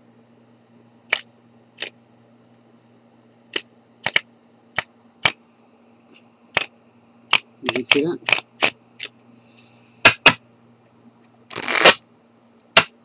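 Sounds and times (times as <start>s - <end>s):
playing cards snapping: 4.0s - 4.2s, 7.3s - 9.1s, 11.5s - 12.0s.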